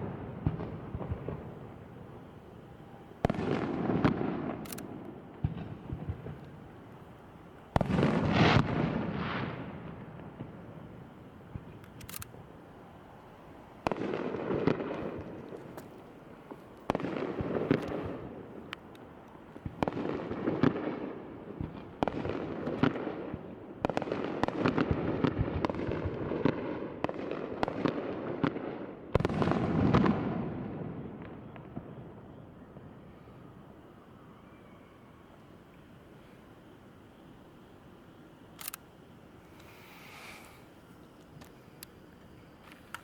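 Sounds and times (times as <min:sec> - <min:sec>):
fireworks booming: 0:00.0 - 0:06.9, 0:07.6 - 0:12.5, 0:13.8 - 0:18.7, 0:19.6 - 0:33.1
fireworks crackling: 0:00.0 - 0:43.0.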